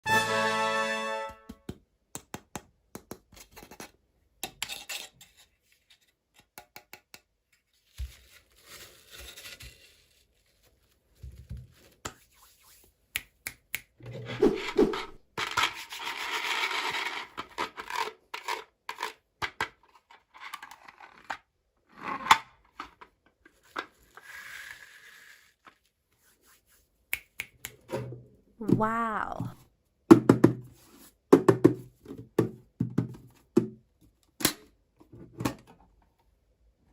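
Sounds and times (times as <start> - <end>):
clicks and taps on packaging: 1.5 - 3.4
packaging rustling and tearing: 7.8 - 11.0.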